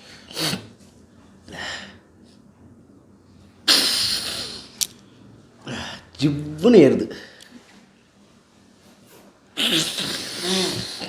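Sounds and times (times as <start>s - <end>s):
loud sharp sniff: 3.7s - 4.8s, 9.6s - 11.0s.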